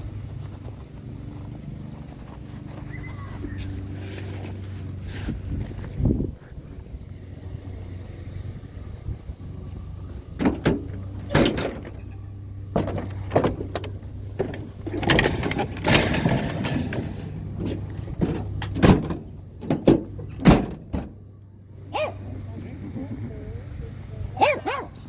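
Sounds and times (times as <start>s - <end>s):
vehicle engine idling: 0.0s - 25.0s
scrap metal clanks and thuds: 10.1s - 21.3s
scraping and rattling: 10.2s - 21.2s.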